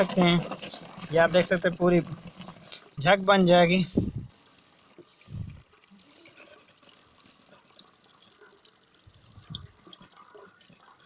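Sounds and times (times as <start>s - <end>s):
water sloshing and dripping: 3.9s - 11.0s.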